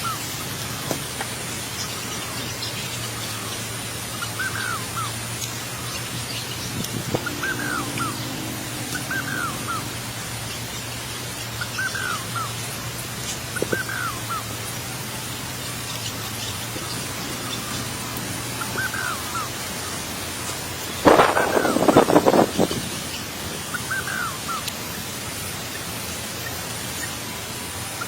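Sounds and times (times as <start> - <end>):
background hiss: 0.0 - 28.0
bird calling: 1.6 - 25.0
low hum: 3.1 - 13.0.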